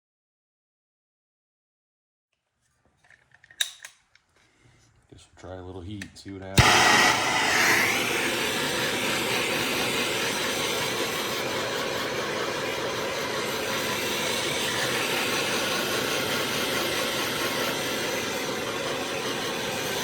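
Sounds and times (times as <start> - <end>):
heat tool rushing: 6.6 - 20.0.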